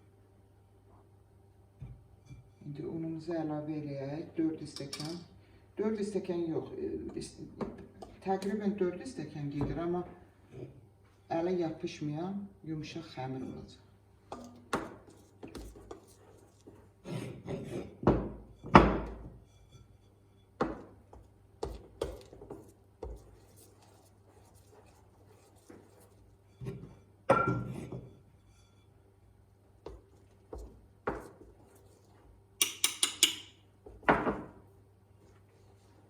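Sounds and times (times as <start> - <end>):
mixing bowl and utensils knocking: 14.3 - 16.9, 20.6 - 28.1, 29.8 - 34.6.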